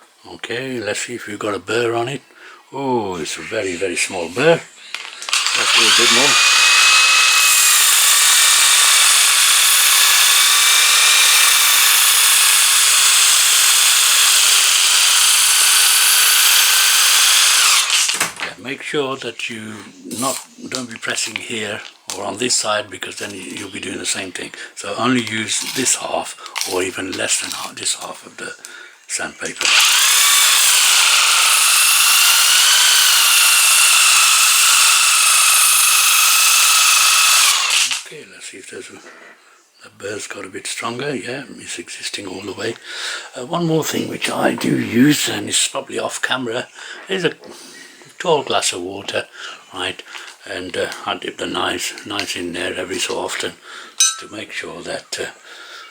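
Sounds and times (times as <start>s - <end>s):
knife grinding on sandpaper disc: 5.1s - 7.7s
knife grinding on sanding disc: 5.3s - 12.7s.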